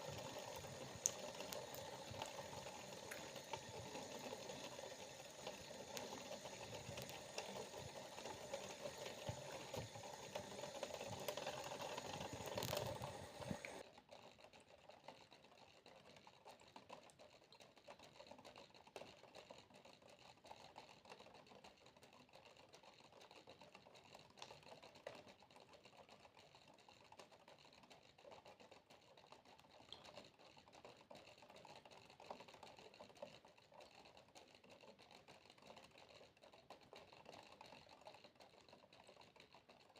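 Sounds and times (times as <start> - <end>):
water running: 0.0 - 13.8
water droplets dripping: 0.4 - 2.3.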